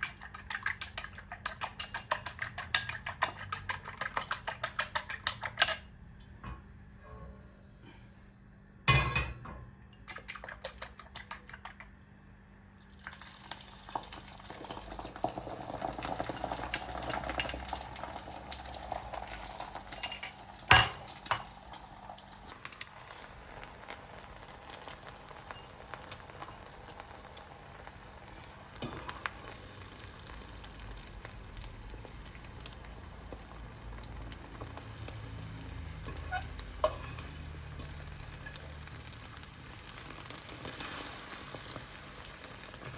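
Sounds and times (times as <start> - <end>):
food sizzling: 12.8 - 42.9.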